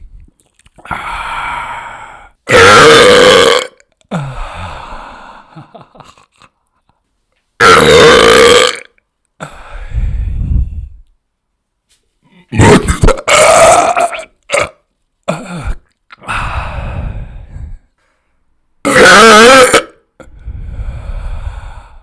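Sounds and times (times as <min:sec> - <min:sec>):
person burping loudly: 0:02.5 - 0:04.4, 0:07.6 - 0:09.0, 0:12.5 - 0:16.3, 0:18.8 - 0:20.1.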